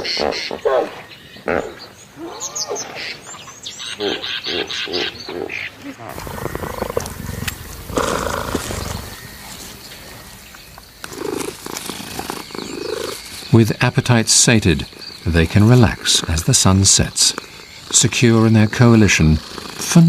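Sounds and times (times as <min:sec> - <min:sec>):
cheetahs calling: 0:00.0 - 0:20.0
cheetahs growling: 0:04.0 - 0:20.0.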